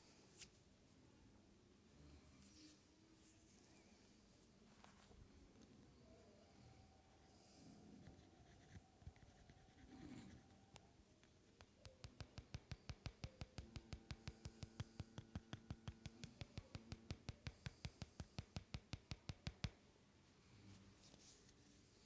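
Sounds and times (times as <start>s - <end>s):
hands tapping in massage: 11.6s - 19.8s.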